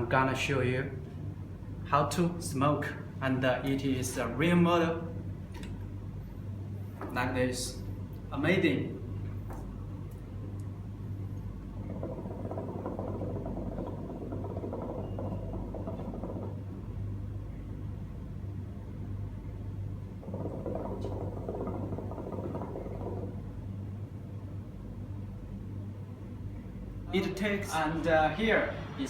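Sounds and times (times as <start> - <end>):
low electrical hum: 0.0 - 29.0
hookah water bubbling: 10.8 - 17.5, 19.9 - 24.3.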